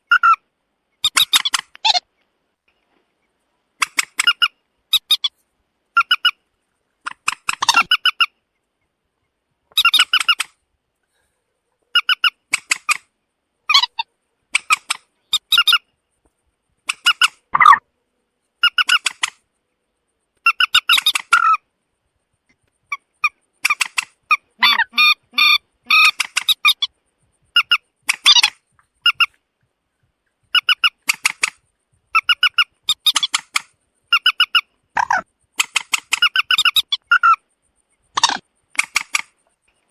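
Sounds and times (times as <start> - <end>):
moorhen clucking calls: 0.0 - 0.4, 3.8 - 6.4, 7.0 - 8.9, 9.7 - 10.5, 11.8 - 13.0, 13.7 - 15.9, 16.8 - 17.8, 20.4 - 21.6, 22.9 - 29.4, 30.2 - 39.4.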